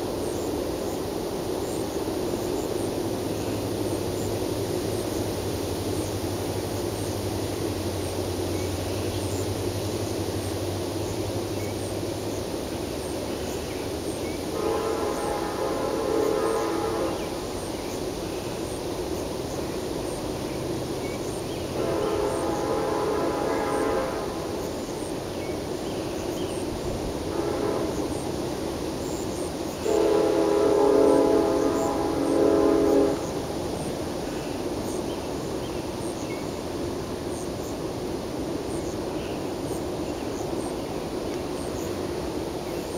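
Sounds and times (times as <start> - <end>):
train rumbling past: 0.0 - 42.9
distant train horn: 14.5 - 17.5, 21.6 - 24.7, 27.3 - 28.5, 29.7 - 33.5.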